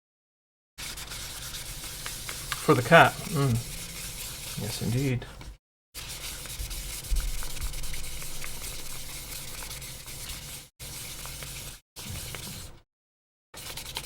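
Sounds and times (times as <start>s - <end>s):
wet sandpaper scrubbing plastic: 0.8s - 5.2s, 6.0s - 12.7s.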